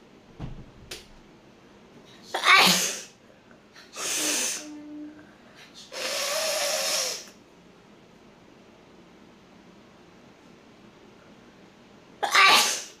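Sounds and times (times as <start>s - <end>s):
woman sneezing: 2.3s - 3.1s, 3.9s - 4.8s, 5.9s - 7.3s, 12.2s - 13.0s.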